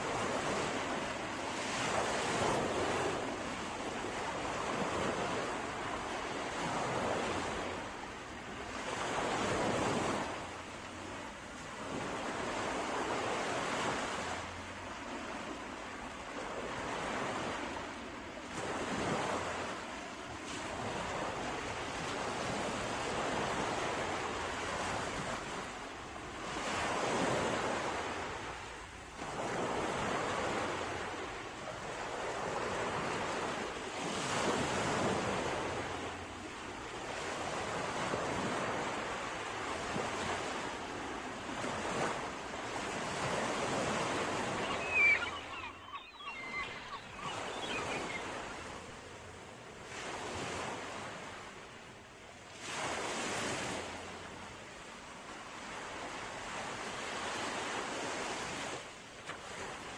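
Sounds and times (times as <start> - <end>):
sea waves breaking on shore: 0.0 - 59.9
wind: 0.0 - 59.9.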